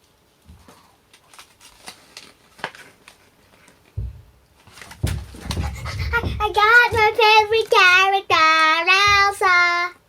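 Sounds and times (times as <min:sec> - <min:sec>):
plastic bag clicks and crackles: 0:01.1 - 0:04.0
low thumps: 0:04.0 - 0:09.6.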